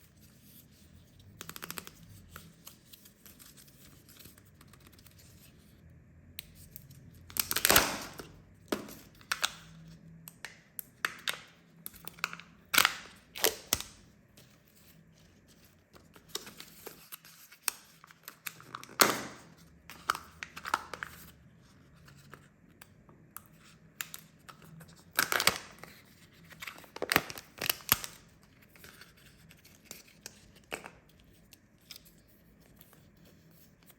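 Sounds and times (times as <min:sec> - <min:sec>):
loud wrapper rips: 0:07.4 - 0:08.3
wrappers tearing and crinkling: 0:07.4 - 0:08.4.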